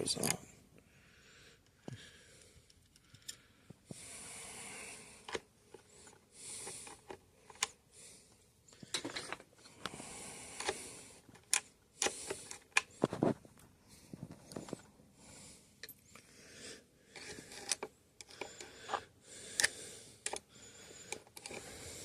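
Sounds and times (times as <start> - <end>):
tool and metal parts clicking: 17.2 - 19.0, 21.1 - 21.7.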